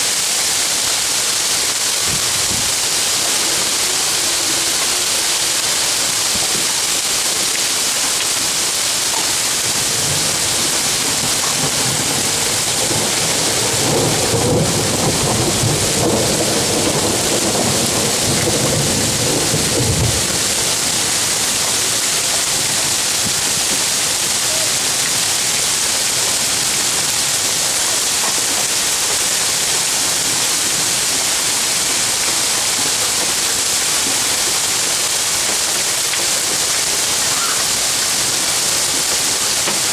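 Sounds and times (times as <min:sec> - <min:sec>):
heavy rain hiss: 0:00.0 - 0:39.9
thunder rumble: 0:09.9 - 0:20.9.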